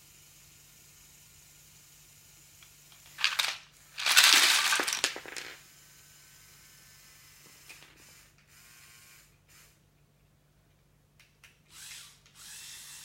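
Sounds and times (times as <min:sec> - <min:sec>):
plastic pieces clattering: 0:03.0 - 0:05.6.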